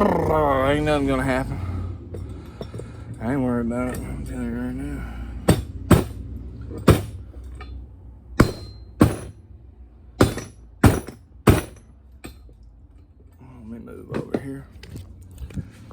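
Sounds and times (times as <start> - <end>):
hammer striking metal: 5.4 - 7.8, 8.4 - 9.4, 10.2 - 12.4.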